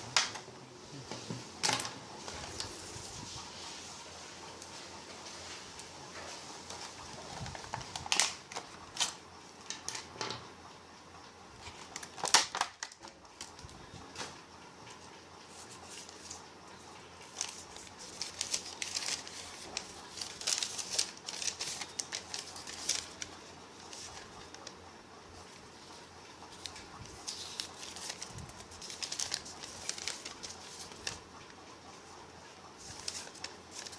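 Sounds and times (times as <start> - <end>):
packaging rustling: 6.7 - 10.1, 11.6 - 13.7, 17.2 - 24.8, 26.5 - 31.3, 32.8 - 33.9.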